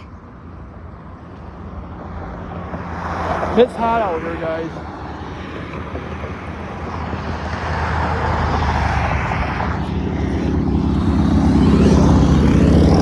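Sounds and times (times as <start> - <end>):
motor engine rumbling: 3.5 - 13.0.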